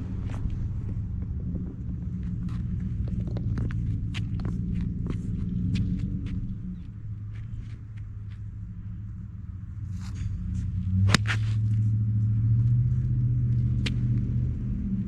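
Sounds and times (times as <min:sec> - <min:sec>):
steady low rumble: 0:00.0 - 0:15.0
golf iron striking ball: 0:11.0 - 0:11.8.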